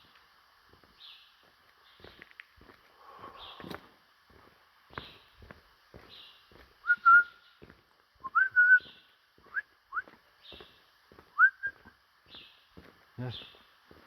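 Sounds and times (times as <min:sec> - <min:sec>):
footsteps crunching on rock: 0:00.0 - 0:14.0
birds whistling calls: 0:08.2 - 0:10.8.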